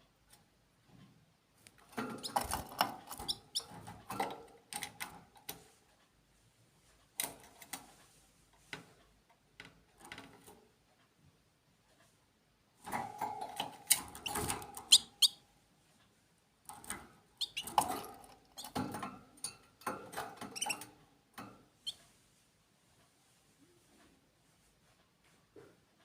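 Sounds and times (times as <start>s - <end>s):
small birds chirping: 2.2s - 3.8s, 14.2s - 15.4s, 17.4s - 17.8s.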